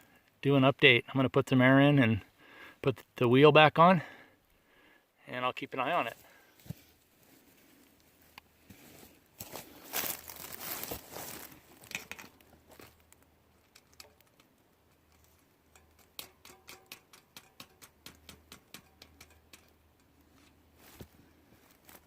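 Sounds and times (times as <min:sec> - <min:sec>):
rustling handling noise: 0:06.0 - 0:17.1, 0:19.8 - 0:22.0
hand pump clicking: 0:15.7 - 0:20.2.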